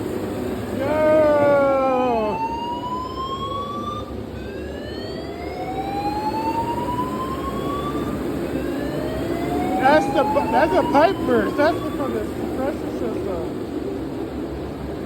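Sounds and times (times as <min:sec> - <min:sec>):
man shouting: 0:00.7 - 0:02.4, 0:09.8 - 0:12.3
fire alarm rising sweep tone: 0:01.9 - 0:12.8.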